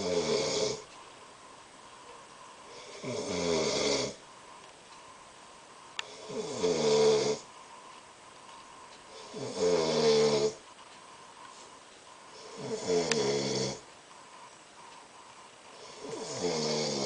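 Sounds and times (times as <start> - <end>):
man snoring: 0.0 - 0.9, 2.7 - 4.2, 6.0 - 7.5, 9.1 - 10.6, 12.4 - 13.8, 15.8 - 17.0.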